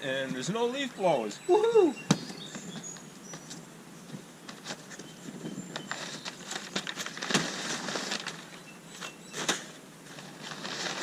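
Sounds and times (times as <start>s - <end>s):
cardboard and packing rustling: 4.4s - 11.0s.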